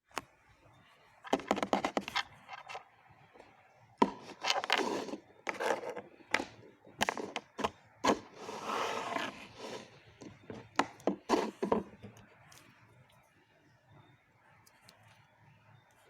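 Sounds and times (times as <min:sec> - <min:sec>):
objects scraping and rubbing: 0:04.0 - 0:12.2.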